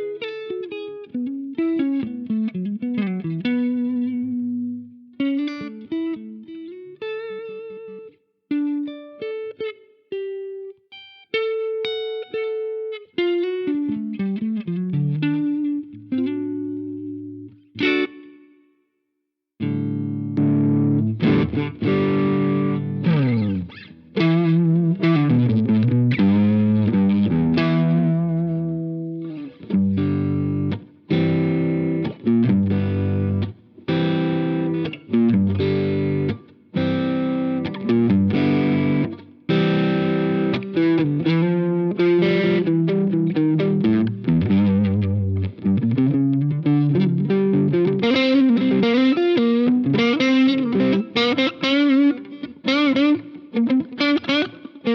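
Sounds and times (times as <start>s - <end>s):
distorted electric guitar: 19.6s - 54.9s.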